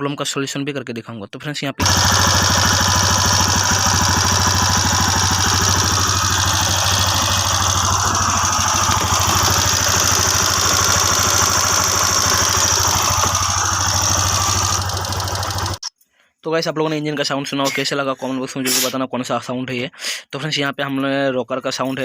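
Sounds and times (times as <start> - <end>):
motorcycle engine idling: 1.8 - 15.8.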